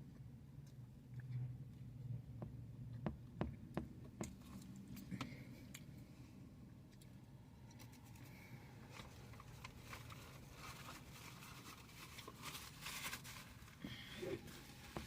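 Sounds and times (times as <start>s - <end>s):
crinkling rustle: 7.7s - 15.0s.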